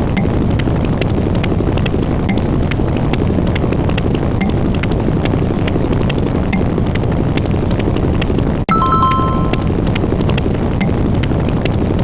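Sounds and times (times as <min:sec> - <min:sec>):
bell ding: 0:08.7 - 0:09.7.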